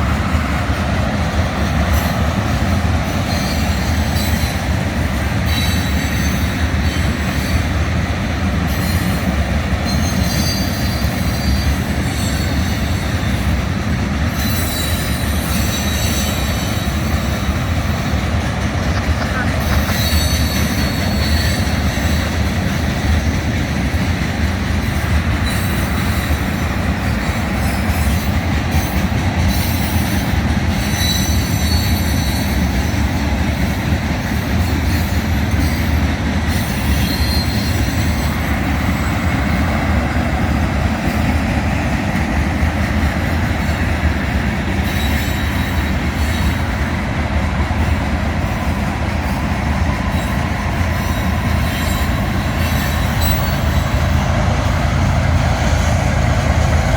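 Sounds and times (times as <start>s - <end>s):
steel wheels clattering on rails: 0.0s - 56.9s
high wheel squeal: 5.4s - 7.7s, 8.7s - 13.6s, 14.3s - 17.8s, 19.0s - 22.5s, 24.8s - 32.8s, 34.6s - 40.1s, 44.8s - 46.8s, 48.4s - 56.9s.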